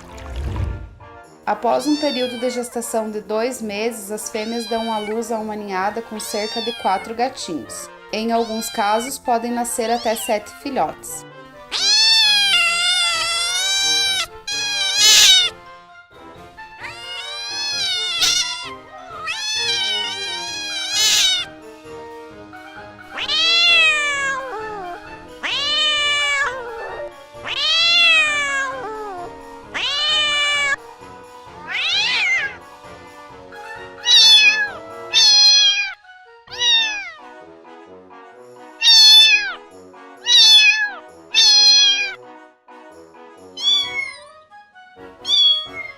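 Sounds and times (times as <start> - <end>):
soft background music: 0.0 - 45.9
kittens meowing: 1.8 - 2.9, 4.2 - 7.4, 8.2 - 10.5, 11.7 - 15.6, 16.7 - 21.6, 22.8 - 30.8, 31.6 - 32.6, 33.8 - 37.2, 38.8 - 39.6, 40.2 - 42.2, 43.5 - 44.4, 45.2 - 45.9.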